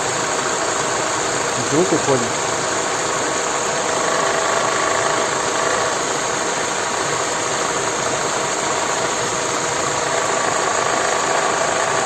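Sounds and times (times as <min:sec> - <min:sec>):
car engine idling: 0:00.0 - 0:12.0
engine belt tensioner rattle: 0:03.7 - 0:08.1, 0:08.8 - 0:12.0.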